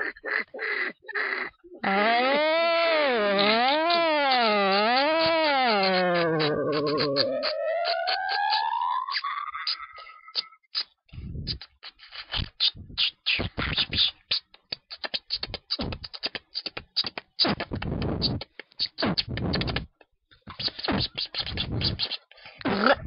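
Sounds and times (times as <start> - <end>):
mouth clicks and hisses: 9.1 - 22.9.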